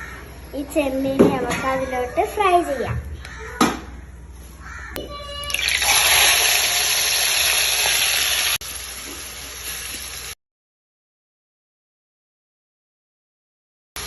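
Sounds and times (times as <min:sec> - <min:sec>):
shrimp sizzling in hot oil: 0:05.6 - 0:10.4.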